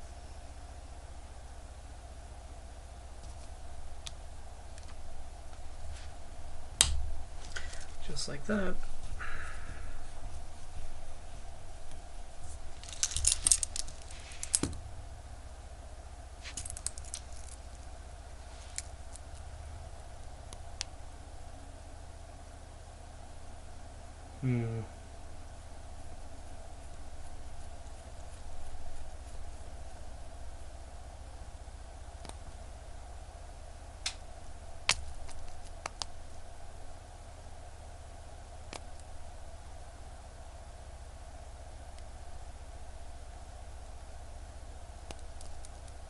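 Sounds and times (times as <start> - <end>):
steady low hum: 0.0 - 46.0
small metal clicks: 12.8 - 14.7.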